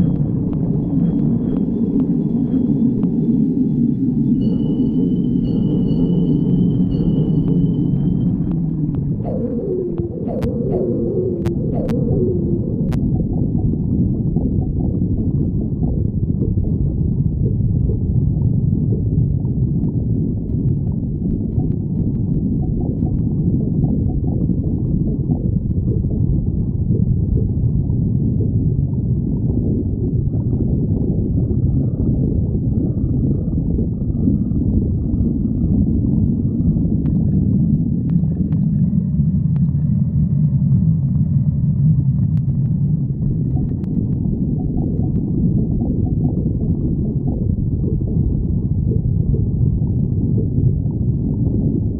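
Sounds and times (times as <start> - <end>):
stomach growling: 8.3 - 51.9.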